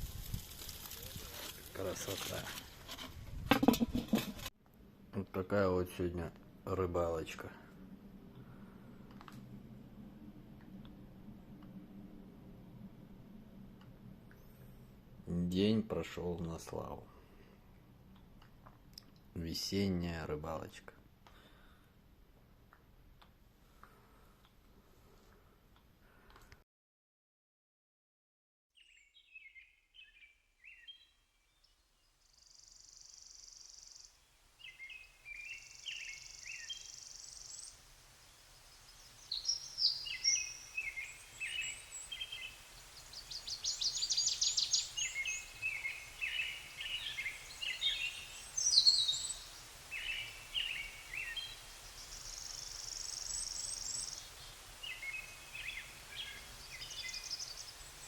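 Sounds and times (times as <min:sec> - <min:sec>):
faint low rumble: 0:06.2 - 0:15.8
songbirds chirping: 0:13.8 - 0:21.8, 0:28.8 - 0:58.0.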